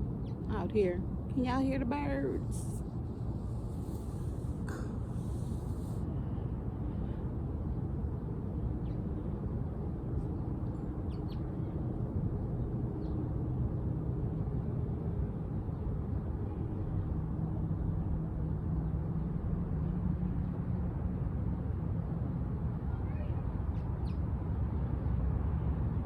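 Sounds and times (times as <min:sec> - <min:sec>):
low hum: 0:00.0 - 0:09.3
steady low rumble: 0:00.0 - 0:18.4.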